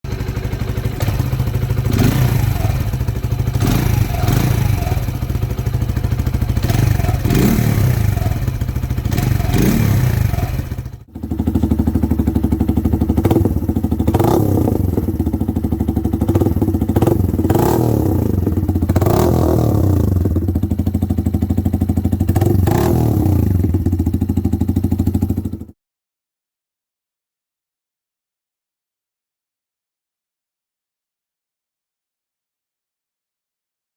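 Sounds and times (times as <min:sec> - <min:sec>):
motorcycle engine idling with blips: 0:00.1 - 0:25.7.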